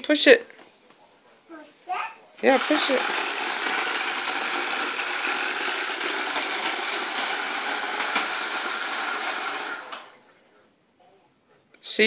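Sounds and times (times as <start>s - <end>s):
vacuum cleaner whirring: 2.4s - 10.2s.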